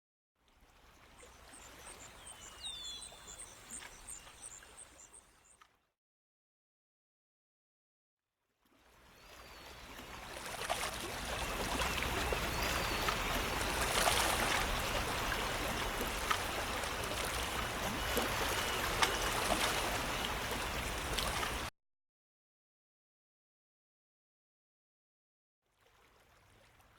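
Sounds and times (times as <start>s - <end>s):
running water: 9.3s - 21.7s.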